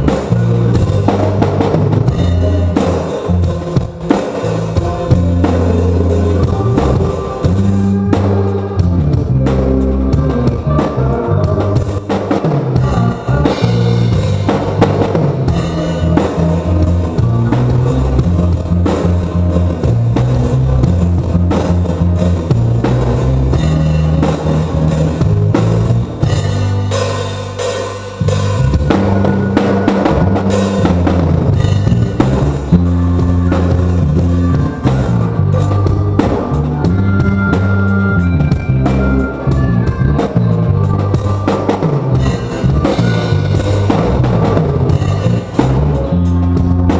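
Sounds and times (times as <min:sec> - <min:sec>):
live band playing: 0:00.0 - 0:46.9
drum kit hits: 0:11.8 - 0:37.8.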